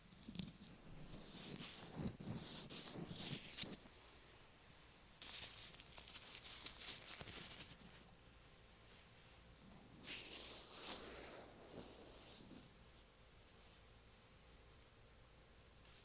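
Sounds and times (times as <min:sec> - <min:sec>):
gloved fingers rubbing microphone: 0:00.6 - 0:03.8.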